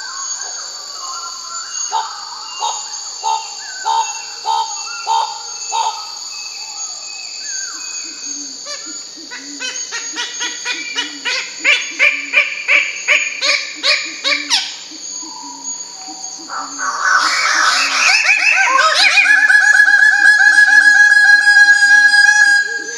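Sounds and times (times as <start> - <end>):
bird calling: 7.6 - 22.9.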